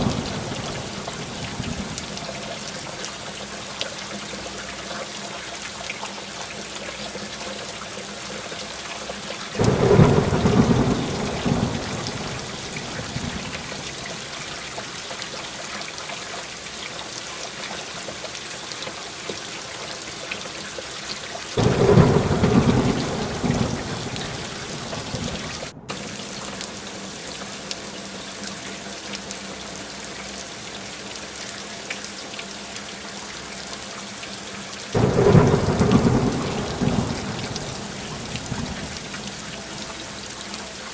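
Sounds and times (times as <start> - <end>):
thunder rolling: 0.0 - 2.1, 9.6 - 14.4, 21.6 - 26.4, 35.0 - 39.5
steady rain: 0.0 - 40.9.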